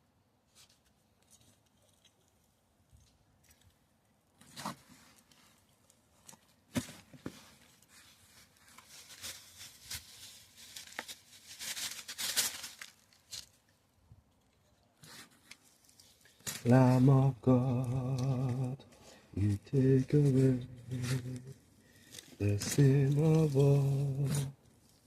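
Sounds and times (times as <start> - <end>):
rustling and scraping of soil: 0.4 - 25.0.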